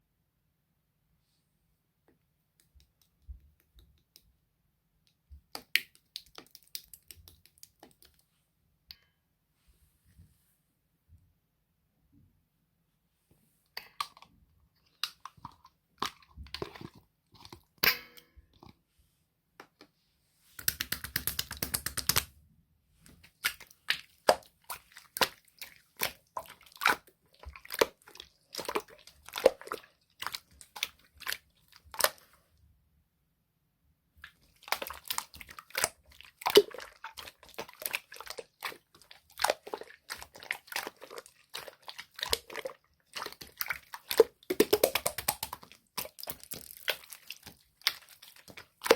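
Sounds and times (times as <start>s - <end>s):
slime crackling and popping: 34.6s - 48.9s.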